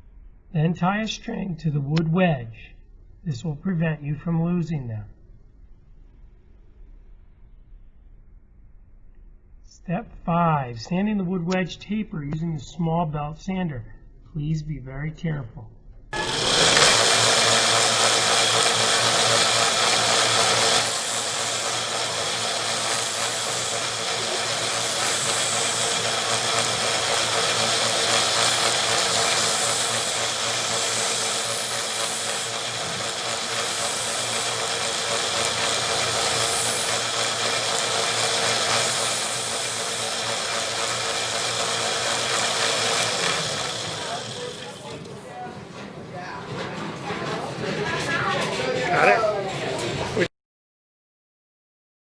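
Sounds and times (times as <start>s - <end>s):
wood rubbing on sanding belt: 16.2s - 44.9s
belt sander motor hum: 16.2s - 45.2s.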